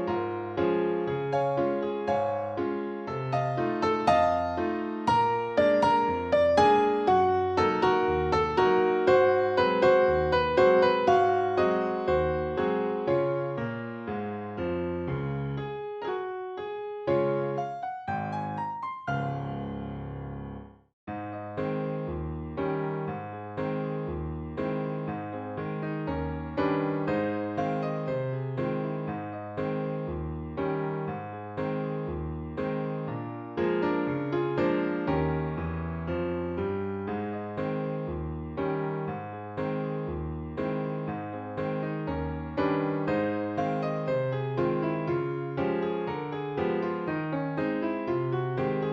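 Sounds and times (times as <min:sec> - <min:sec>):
piano music: 0:00.0 - 0:48.9.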